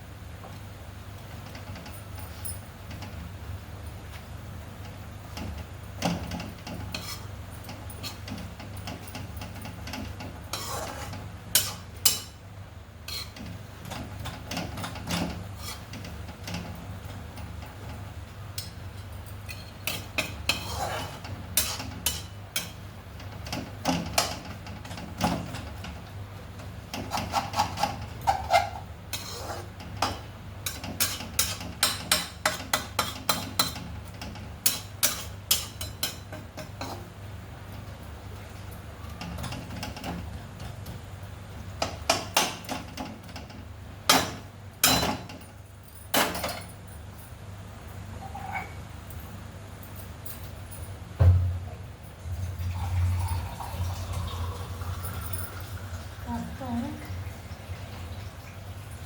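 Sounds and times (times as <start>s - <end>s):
utensils clinking on cookware: 6.1s - 12.4s, 18.6s - 22.8s, 27.0s - 37.0s, 44.1s - 46.8s.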